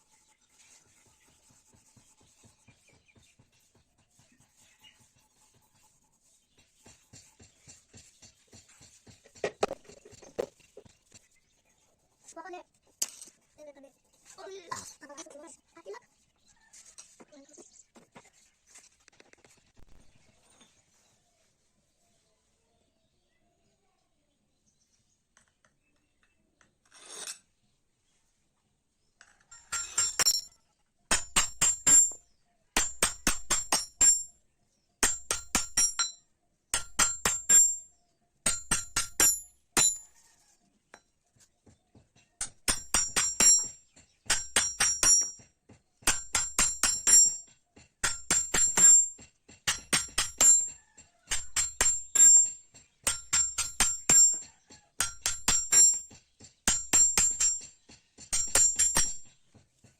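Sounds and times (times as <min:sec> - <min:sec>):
hammer striking metal on anvil: 0:29.7 - 0:30.5, 0:31.1 - 0:32.2, 0:32.8 - 0:34.3, 0:35.0 - 0:37.9, 0:38.5 - 0:40.1, 0:42.4 - 0:45.4, 0:46.0 - 0:59.3.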